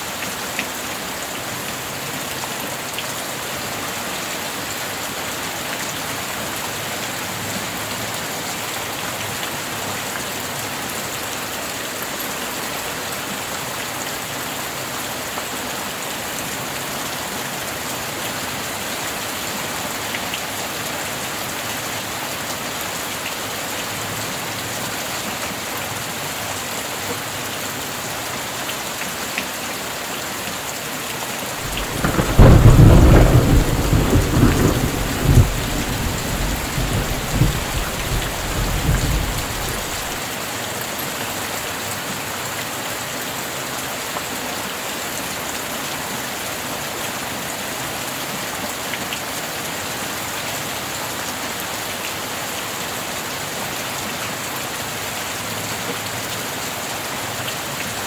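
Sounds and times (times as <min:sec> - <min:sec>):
heavy rain: 0:00.0 - 0:58.0
rolling thunder: 0:31.6 - 0:40.2.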